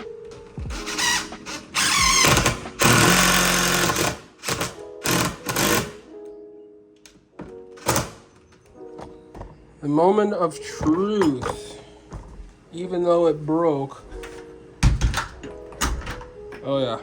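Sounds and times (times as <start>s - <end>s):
power driver driving screws: 0.8s - 6.0s, 7.8s - 8.2s.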